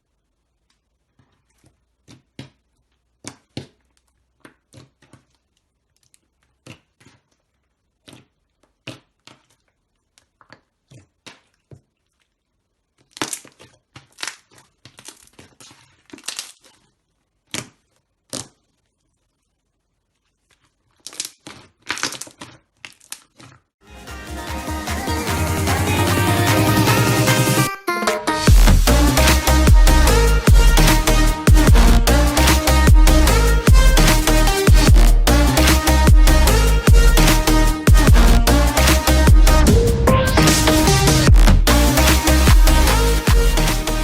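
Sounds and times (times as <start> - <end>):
slime squeezed popping and crackling: 12.9 - 18.9, 20.6 - 23.6.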